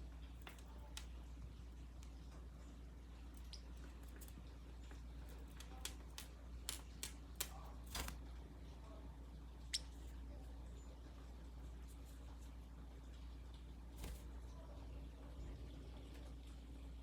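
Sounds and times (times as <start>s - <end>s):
low room hum: 0.0s - 17.0s
light clicks and taps: 0.2s - 1.2s, 3.5s - 7.7s
faint bird chirps: 3.2s - 4.0s, 9.5s - 11.3s.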